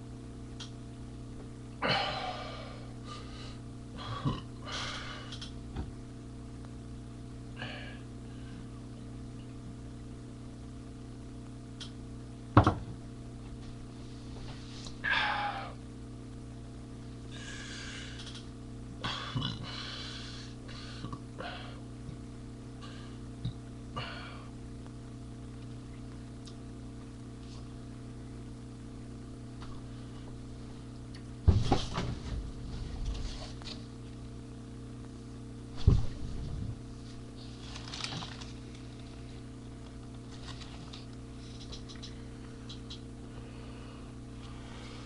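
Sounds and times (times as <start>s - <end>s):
low electrical hum: 0.0s - 45.0s
rustles and clicks: 37.4s - 39.1s.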